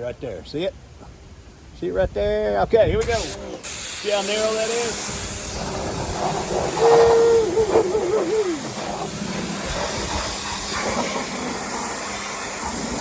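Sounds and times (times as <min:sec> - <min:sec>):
pressure washer spray hissing: 0:03.0 - 0:13.0.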